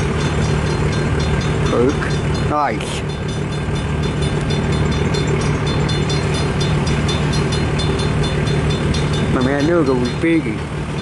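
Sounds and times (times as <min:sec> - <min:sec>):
freight train rumbling past: 0:00.0 - 0:11.0.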